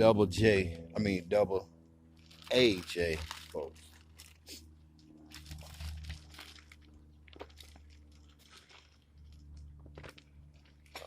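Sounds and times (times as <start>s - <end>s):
low steady hum: 0.0s - 11.0s
plastic bag crinkling: 2.2s - 4.5s, 5.2s - 11.0s.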